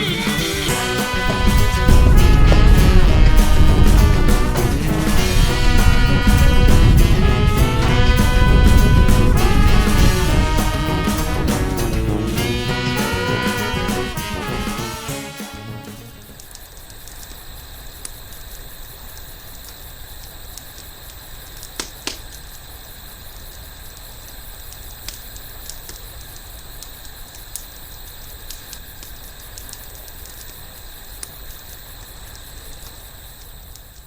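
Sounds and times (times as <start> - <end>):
wood fire crackling: 0.0 - 17.4
fire pops and snaps: 20.5 - 22.6.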